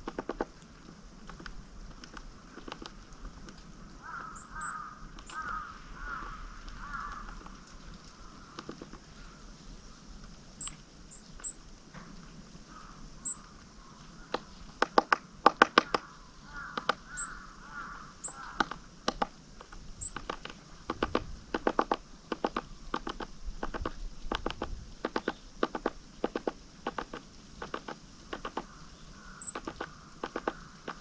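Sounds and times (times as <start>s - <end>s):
birds pecking with sharp taps: 0.0s - 9.4s, 10.2s - 31.0s
faint crow cawing: 4.0s - 10.1s, 12.5s - 19.2s, 28.2s - 31.0s
thin high bird calls: 4.0s - 11.7s, 12.7s - 14.7s, 15.8s - 20.8s, 27.7s - 31.0s.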